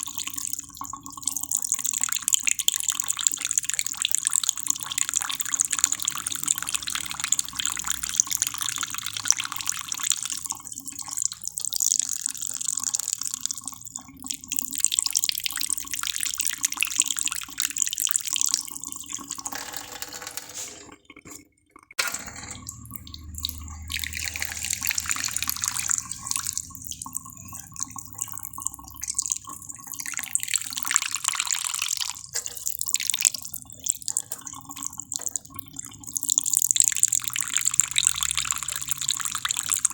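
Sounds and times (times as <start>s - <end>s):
water running and splashing: 22.8s - 30.8s.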